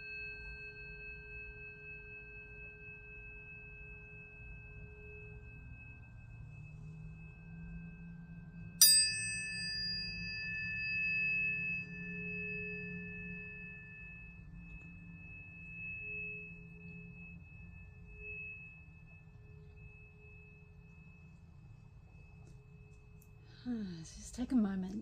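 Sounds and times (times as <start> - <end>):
tuning fork struck with metallic ping: 0.0 - 25.0
tuning forks ringing: 0.0 - 25.0.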